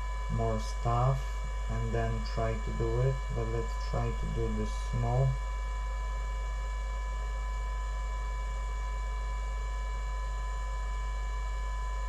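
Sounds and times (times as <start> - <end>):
electrical mains hum: 0.0 - 12.0.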